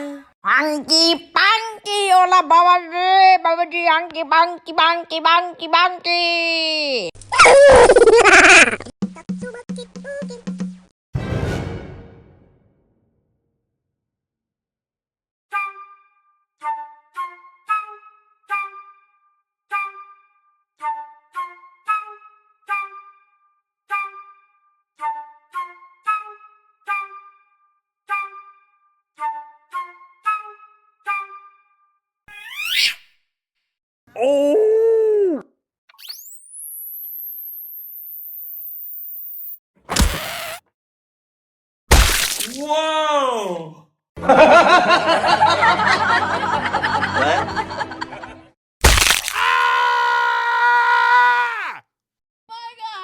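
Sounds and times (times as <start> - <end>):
sharp hit: 41.9 - 42.7, 48.8 - 49.4.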